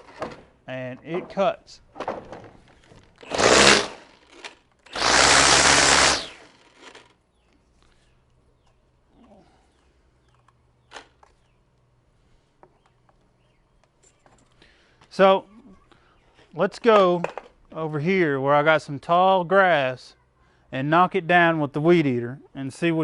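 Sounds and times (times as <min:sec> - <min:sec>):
string trimmer motor bursts: 0:03.2 - 0:07.2.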